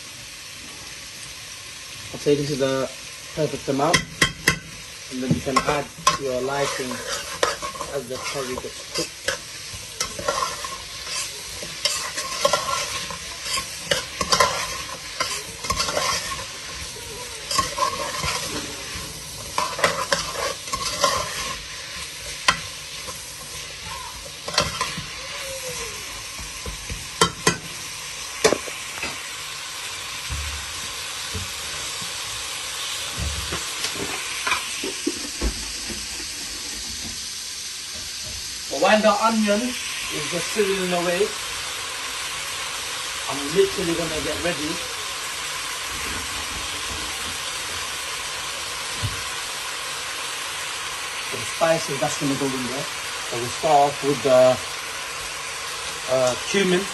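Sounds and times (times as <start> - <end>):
onions sizzling in hot oil: 0.0 - 56.9
spoon scraping against pan: 5.4 - 25.2, 27.2 - 27.8.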